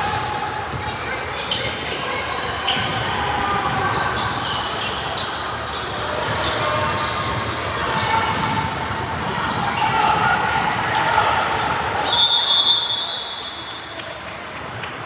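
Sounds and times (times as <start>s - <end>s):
chatter of many voices: 0.0s - 15.0s
basketball bouncing on court: 6.2s - 10.4s.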